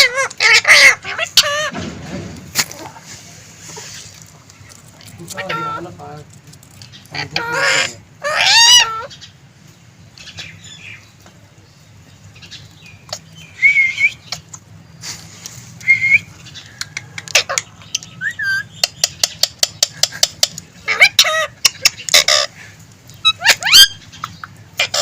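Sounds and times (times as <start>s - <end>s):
sharp clicks: 18.8s - 20.7s.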